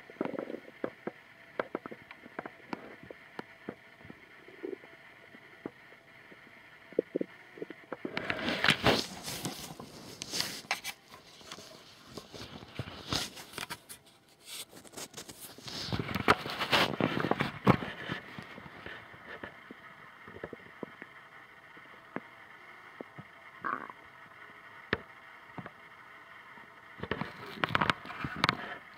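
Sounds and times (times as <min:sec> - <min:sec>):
stomach gurgles: 0:00.0 - 0:10.1, 0:15.6 - 0:21.1, 0:23.0 - 0:24.0
rustling and scraping against clothing: 0:07.0 - 0:19.6.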